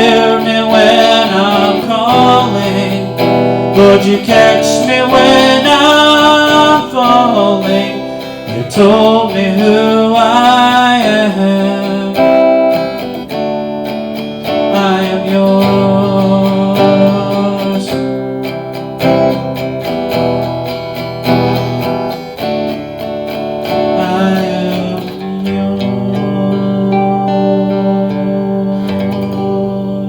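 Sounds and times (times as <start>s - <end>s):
acoustic guitar strummed and picked: 0.0s - 30.0s.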